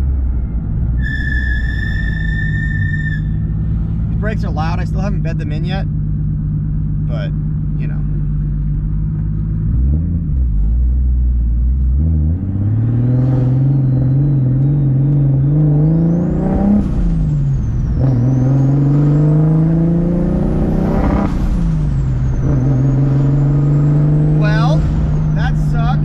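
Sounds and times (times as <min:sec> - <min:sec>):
car engine accelerating: 0:00.0 - 0:26.0
turbo whistle: 0:01.0 - 0:03.6.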